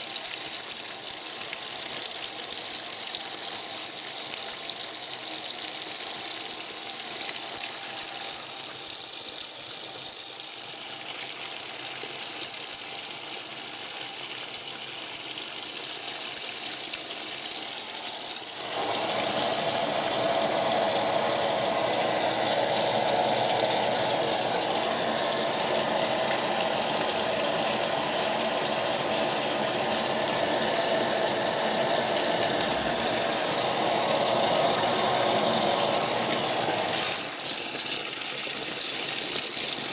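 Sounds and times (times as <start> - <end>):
washing machine filling with water: 0.0 - 39.9.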